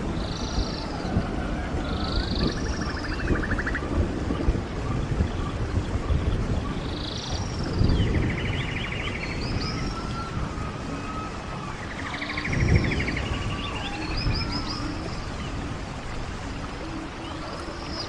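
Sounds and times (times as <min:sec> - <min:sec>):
stream water rushing: 0:00.0 - 0:18.0
songbird trilling and whistling: 0:01.9 - 0:03.8, 0:06.8 - 0:15.5.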